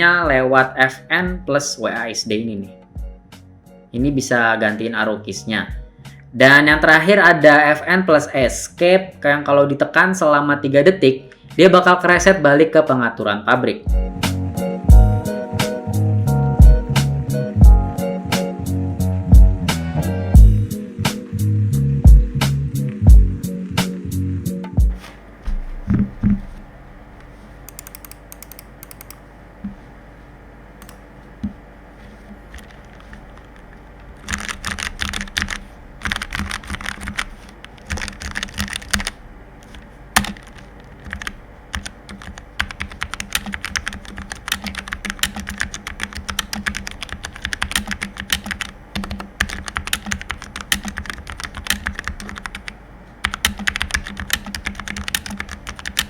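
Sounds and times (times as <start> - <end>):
typing on mechanical keyboard: 27.7 - 29.2, 32.5 - 56.0.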